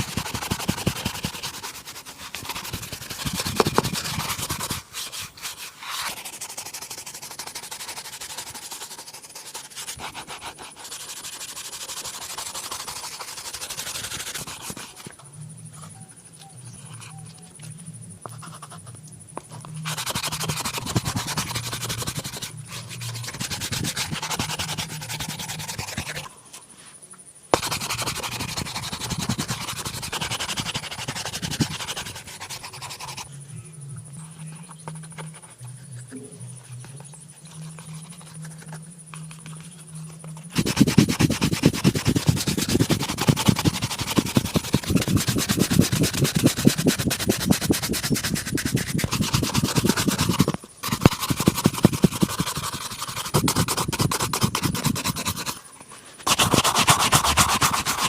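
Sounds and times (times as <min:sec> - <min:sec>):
brush scrubbing leather shoe: 0:00.0 - 0:15.2, 0:19.4 - 0:26.3, 0:27.5 - 0:33.3, 0:37.5 - 0:58.0.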